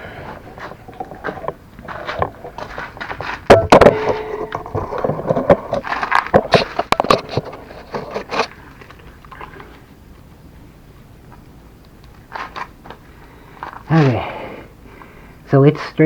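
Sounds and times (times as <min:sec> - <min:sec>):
metal tools clanking: 0:00.6 - 0:07.4.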